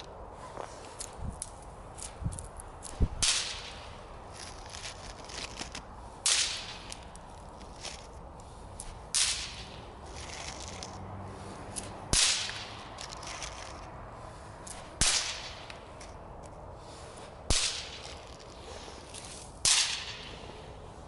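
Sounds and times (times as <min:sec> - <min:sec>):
firecracker cracks: 0:02.8 - 0:04.0, 0:04.6 - 0:08.0, 0:08.8 - 0:11.0, 0:11.8 - 0:13.8, 0:14.7 - 0:15.8, 0:17.5 - 0:20.4.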